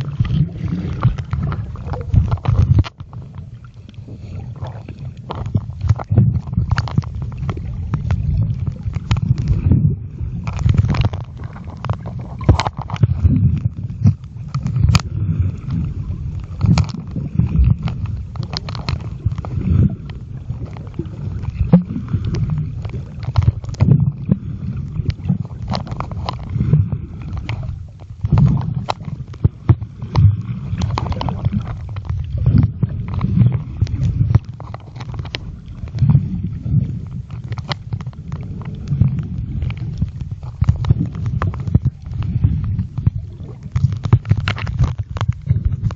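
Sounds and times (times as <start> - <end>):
churning underwater rumble: 0.0 - 45.9.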